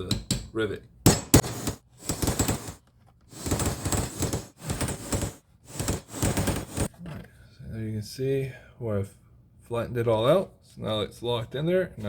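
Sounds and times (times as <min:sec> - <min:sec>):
hammer tapping on metal punch: 0:00.0 - 0:00.5, 0:01.1 - 0:02.8.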